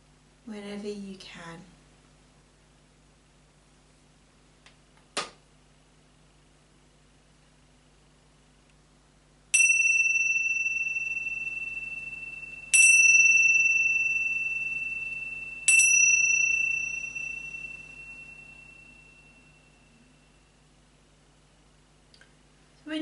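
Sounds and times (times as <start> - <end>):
meditation bell ringing: 9.5 - 20.6.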